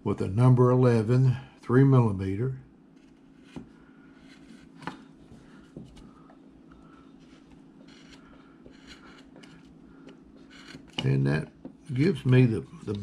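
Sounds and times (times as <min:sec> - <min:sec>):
steady low hum: 0:00.0 - 0:13.0
gouge scraping wood: 0:03.0 - 0:04.8, 0:07.2 - 0:11.1.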